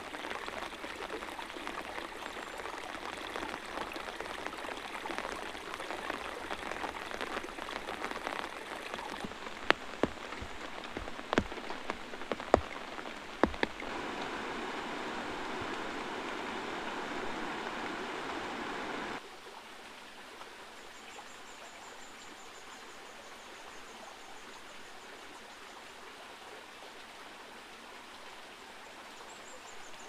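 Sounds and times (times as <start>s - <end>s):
heavy rain: 0.0s - 19.2s
quiet steady hiss: 0.0s - 25.2s.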